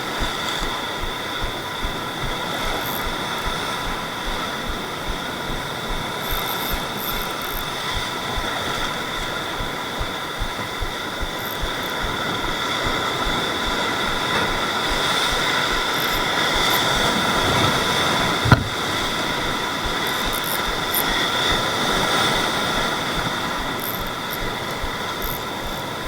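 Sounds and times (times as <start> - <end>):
high-pitched whine: 0.0 - 17.2
sharp thump: 18.4 - 18.8.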